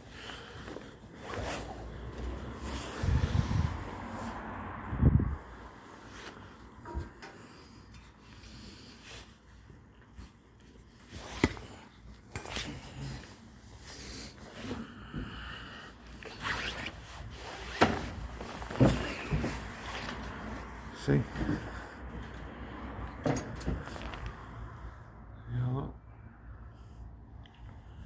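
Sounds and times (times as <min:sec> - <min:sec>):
clothing and hands rubbing: 0:00.4 - 0:04.4, 0:16.1 - 0:22.4.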